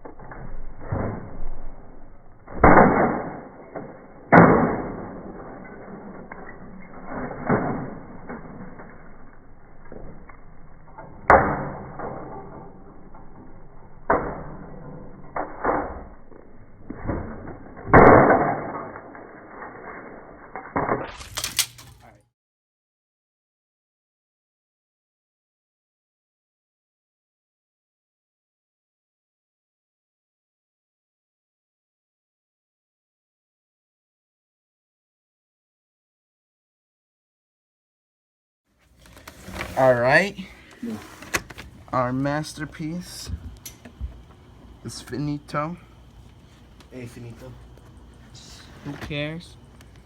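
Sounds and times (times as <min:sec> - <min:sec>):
crashing and breaking impacts: 0:00.1 - 0:22.2.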